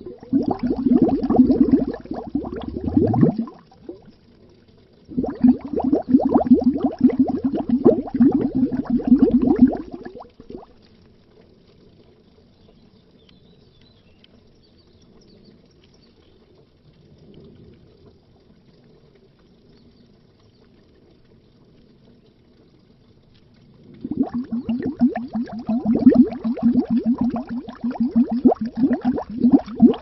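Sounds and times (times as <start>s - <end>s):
bubbles gurgling underwater: 0.0s - 4.2s, 4.9s - 10.8s, 23.8s - 30.0s
low watery murmur: 0.0s - 13.1s, 16.8s - 30.0s.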